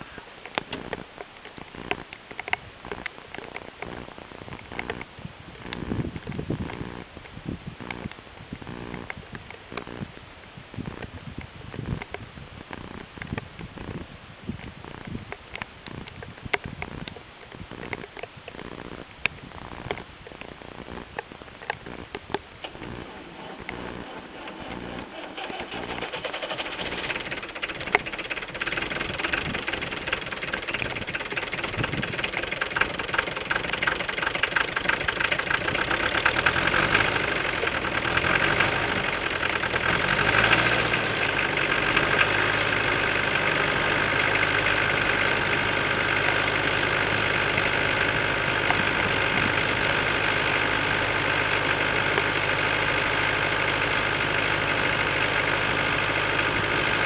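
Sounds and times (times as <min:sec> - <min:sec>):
diesel tractor engine clattering: 0:21.6 - 0:57.0.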